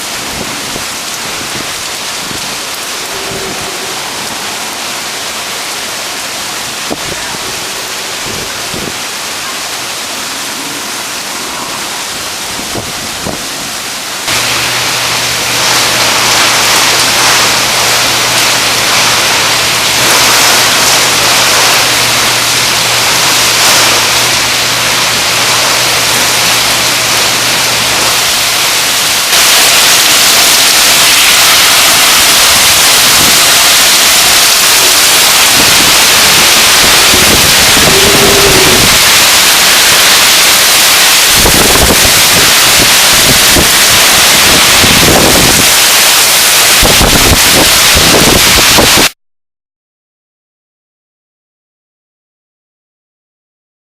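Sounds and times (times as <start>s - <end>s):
wind buffeting microphone: 0.0s - 4.9s, 6.7s - 9.1s, 10.5s - 14.4s, 35.0s - 40.4s, 41.0s - 46.0s, 46.6s - 49.1s
wind and driving rain: 0.0s - 49.2s.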